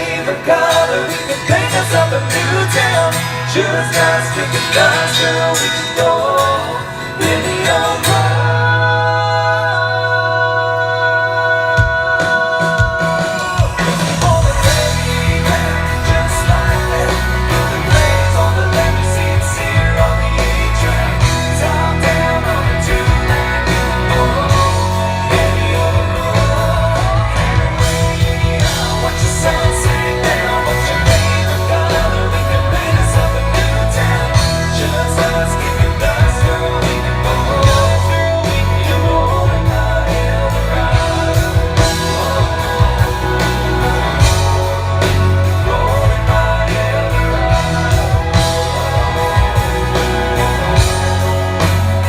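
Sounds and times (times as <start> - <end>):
bass: 0.0 - 52.0
guitar: 0.0 - 52.0
live country band playing: 0.0 - 52.0
drum groove: 11.8 - 52.0.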